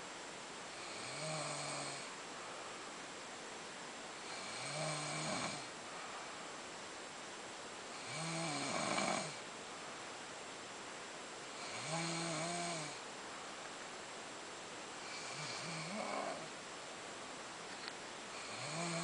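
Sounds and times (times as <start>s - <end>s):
woman snoring: 0.7s - 2.1s, 4.2s - 5.7s, 8.0s - 9.4s, 11.6s - 13.0s, 15.0s - 16.5s, 18.4s - 19.0s.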